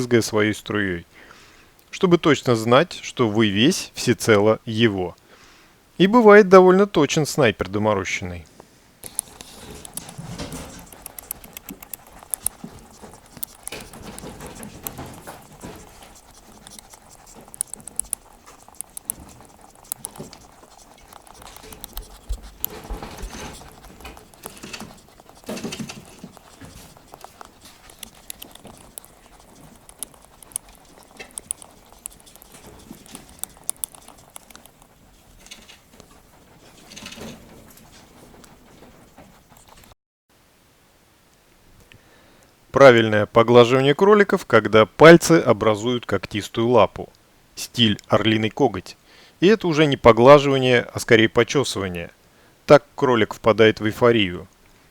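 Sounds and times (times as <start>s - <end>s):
rabbit paws pattering: 7.2s - 40.0s.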